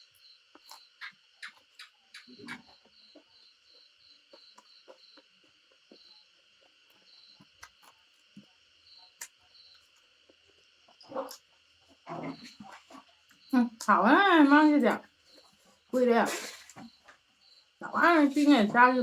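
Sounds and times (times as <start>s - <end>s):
cricket chirping: 0.0s - 19.0s
high insect hum: 0.0s - 19.0s
person chewing: 4.2s - 8.5s.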